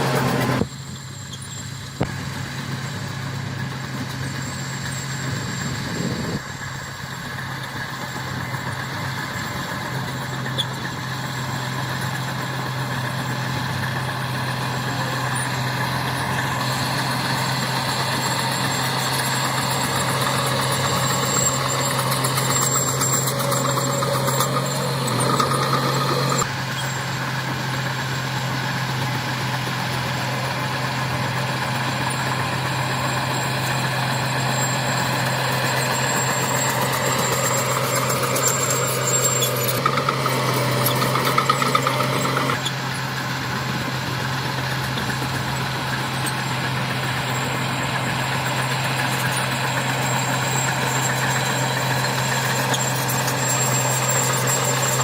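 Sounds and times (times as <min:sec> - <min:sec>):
thin high squeak: 0:00.0 - 0:02.1, 0:04.1 - 0:12.3, 0:14.1 - 0:27.2, 0:31.8 - 0:43.1, 0:44.6 - 0:55.0
diesel engine drone: 0:00.0 - 0:55.0.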